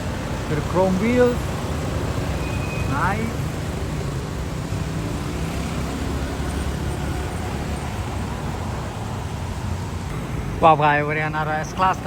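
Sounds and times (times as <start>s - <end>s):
cars passing: 0.0s - 12.0s.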